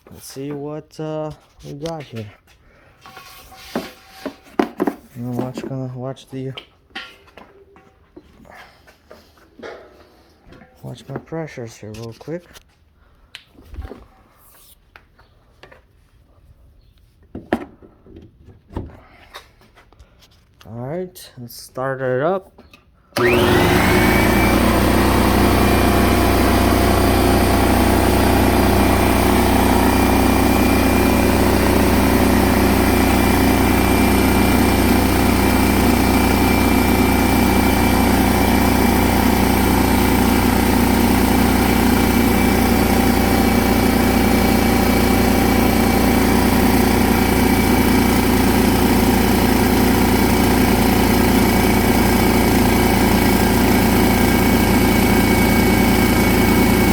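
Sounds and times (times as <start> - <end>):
air compressor running: 23.2 - 56.9.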